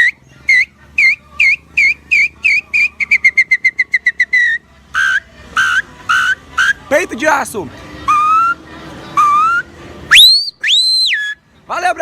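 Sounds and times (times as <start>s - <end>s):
man whistling birdsong imitation: 0.0s - 6.8s, 8.1s - 8.6s, 9.2s - 11.4s.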